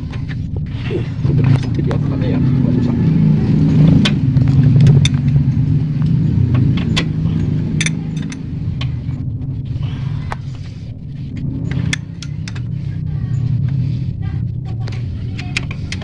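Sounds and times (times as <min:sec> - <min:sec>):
diesel engine idling: 0:00.0 - 0:16.0
metal tools clinking: 0:06.8 - 0:08.5.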